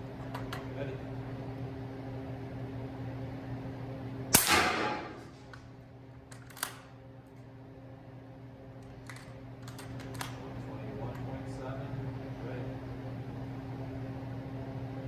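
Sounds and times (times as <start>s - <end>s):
suppressed gunshot: 4.4s - 5.3s.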